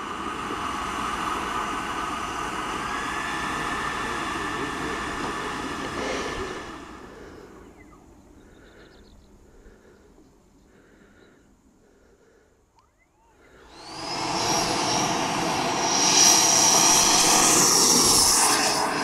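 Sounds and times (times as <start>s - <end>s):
rushing air: 0.0s - 7.7s, 13.6s - 19.0s
electric ducted fan whine: 0.0s - 19.0s.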